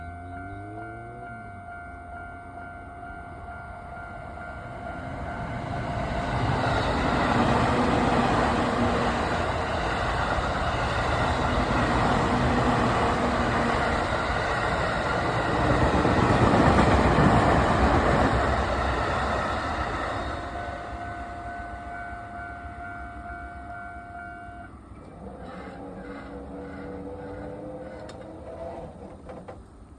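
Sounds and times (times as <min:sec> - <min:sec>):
crossing warning bell: 0:00.0 - 0:28.2
train passing: 0:00.0 - 0:29.9.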